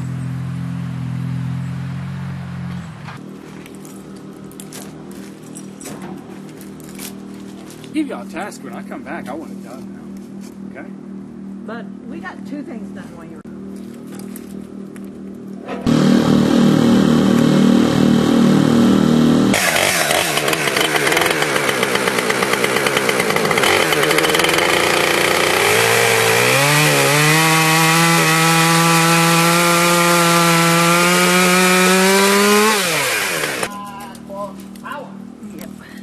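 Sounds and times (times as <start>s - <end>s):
gas-powered saw cutting log: 15.6s - 33.7s.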